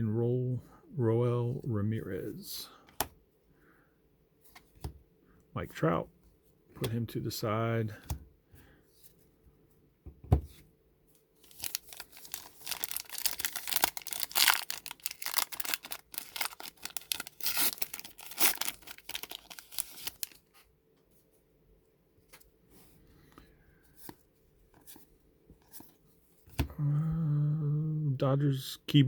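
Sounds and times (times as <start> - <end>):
foil wrapper tearing and crinkling: 11.4 - 20.5.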